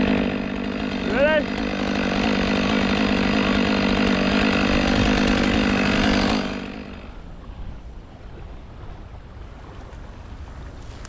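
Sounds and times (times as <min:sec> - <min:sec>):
chainsaw running at high revs: 0:00.0 - 0:07.2.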